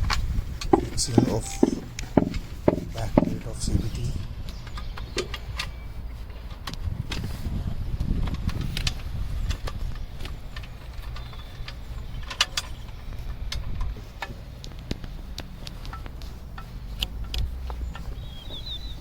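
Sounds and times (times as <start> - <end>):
light metallic taps: 0.6 - 3.4
low engine-like hum: 9.2 - 19.0.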